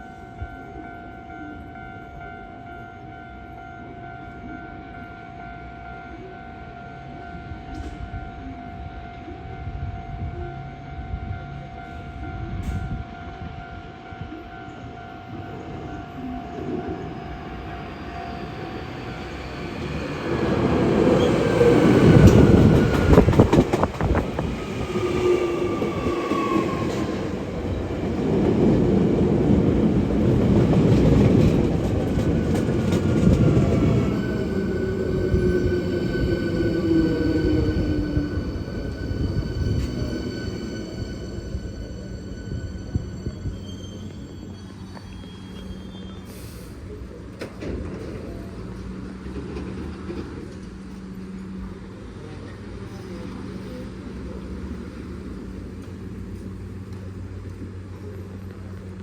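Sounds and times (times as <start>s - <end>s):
electric train rumbling: 0.0s - 59.0s
rail-joint clicks: 7.7s - 8.2s, 12.4s - 13.0s, 19.8s - 25.1s, 29.9s - 51.4s.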